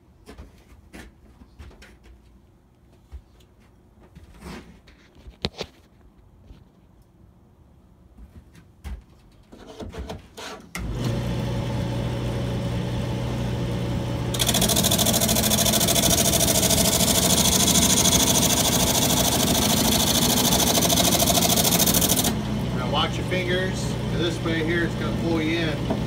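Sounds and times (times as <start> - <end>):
lathe motor humming: 10.8 - 26.0.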